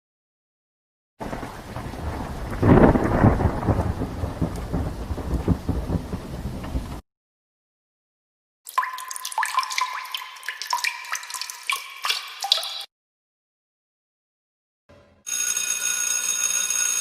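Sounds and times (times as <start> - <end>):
rain: 1.2 - 7.0
thunder rumbling: 1.2 - 7.0.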